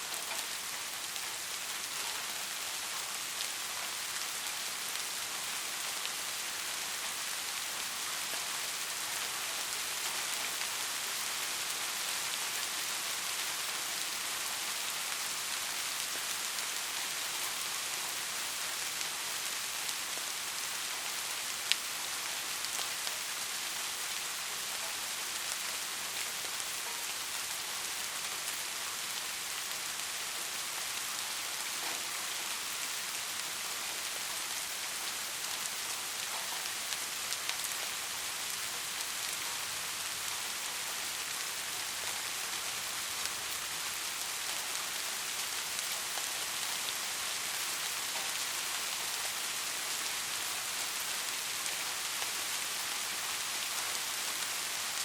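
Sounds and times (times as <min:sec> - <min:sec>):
steady rain hiss: 0:00.0 - 0:55.0.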